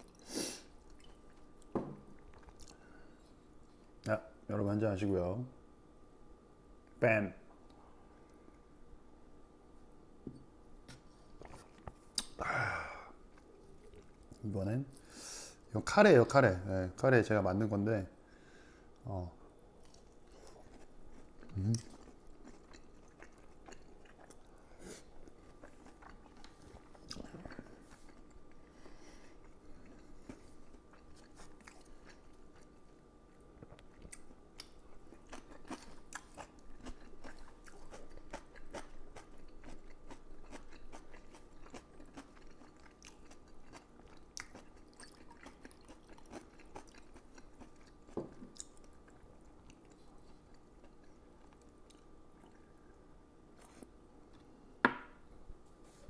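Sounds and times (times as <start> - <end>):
person chewing: 0.0 - 2.8, 11.4 - 12.4, 13.2 - 14.4, 19.8 - 54.5
low electrical hum: 0.0 - 56.0.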